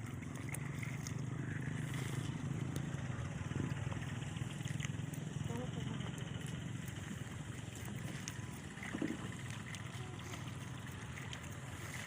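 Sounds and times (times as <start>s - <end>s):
small engine running: 0.0s - 12.0s.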